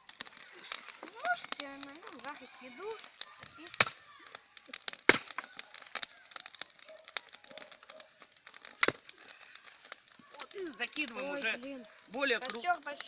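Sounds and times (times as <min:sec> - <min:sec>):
sharp loud cracks: 0:00.0 - 0:12.8
wood fire crackling: 0:00.0 - 0:13.0.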